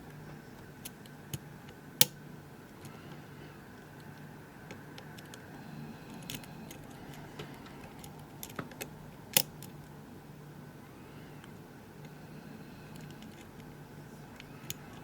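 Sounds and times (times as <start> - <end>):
lock pick metallic clicks: 8.0 - 9.6.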